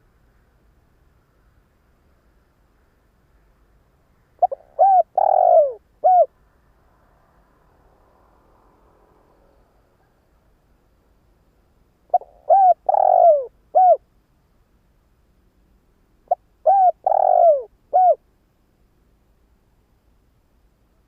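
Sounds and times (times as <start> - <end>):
dove cooing: 4.4 - 6.3, 12.1 - 14.0, 16.2 - 18.2.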